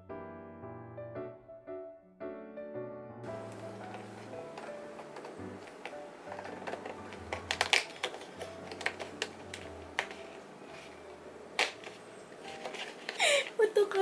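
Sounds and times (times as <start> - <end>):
cardboard snapping: 3.4 - 13.2
paper and cardboard clicks and taps: 3.4 - 13.6.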